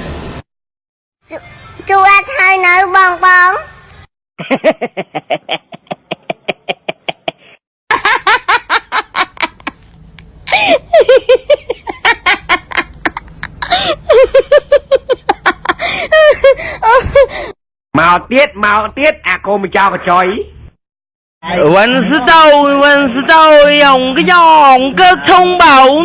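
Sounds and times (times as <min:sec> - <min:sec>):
people laughing hard: 0:04.4 - 0:09.8, 0:10.5 - 0:17.5.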